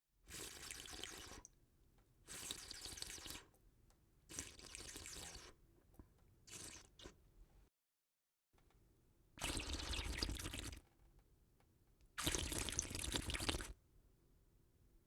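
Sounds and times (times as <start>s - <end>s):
person slurping liquid: 0.3s - 1.4s, 4.3s - 5.6s, 6.5s - 7.2s, 9.4s - 10.8s, 12.2s - 13.8s.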